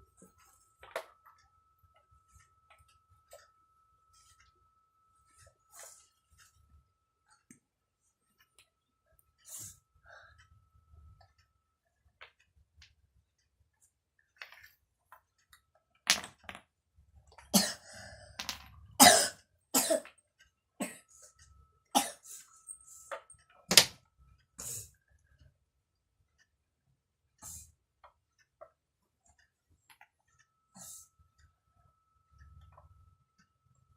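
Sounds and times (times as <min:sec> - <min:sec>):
child coughing: 0:17.5 - 0:18.0, 0:19.0 - 0:20.1, 0:22.0 - 0:22.4.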